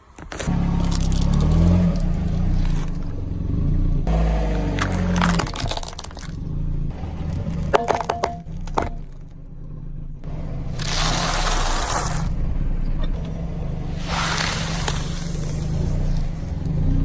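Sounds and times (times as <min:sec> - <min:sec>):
tyre crushing objects: 0:00.0 - 0:03.2, 0:04.1 - 0:09.3, 0:10.6 - 0:12.3, 0:13.9 - 0:16.7
car engine running low: 0:00.2 - 0:17.0.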